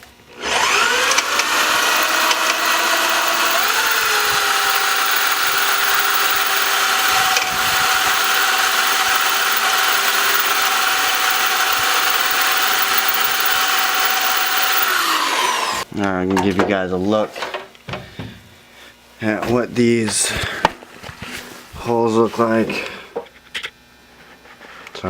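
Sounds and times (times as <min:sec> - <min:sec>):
power drill boring into metal: 0:00.4 - 0:15.8.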